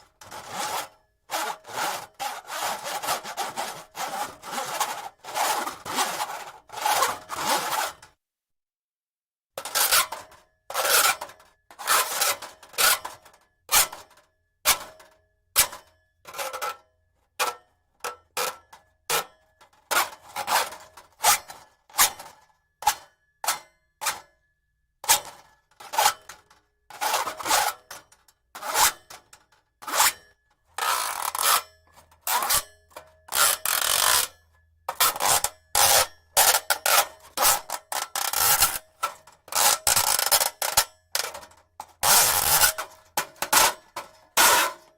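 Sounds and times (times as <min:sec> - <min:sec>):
steel cable scraping: 0:33.3 - 0:34.4.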